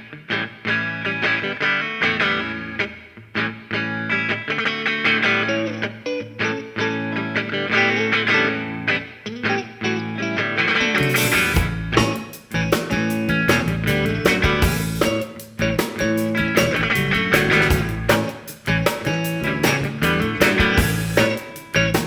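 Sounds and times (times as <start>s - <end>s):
electric guitars playing: 0.0s - 22.0s
bass line: 11.0s - 22.0s.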